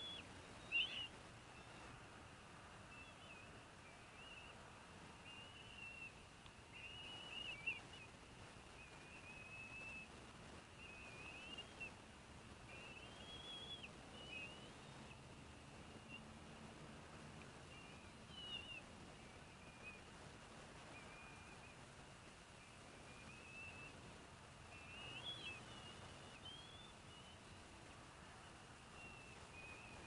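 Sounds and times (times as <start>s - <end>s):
eaglets whistling calls: 0.0s - 2.0s, 2.9s - 8.1s, 8.7s - 12.0s, 12.7s - 15.2s, 15.8s - 16.3s, 17.6s - 20.1s, 20.8s - 21.8s, 22.6s - 24.0s, 24.6s - 27.8s, 28.4s - 30.0s.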